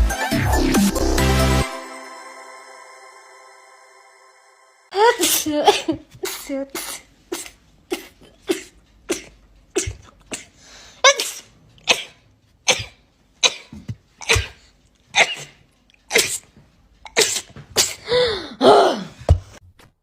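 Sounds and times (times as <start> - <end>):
girl sneezing: 5.0 - 16.5, 17.1 - 19.2.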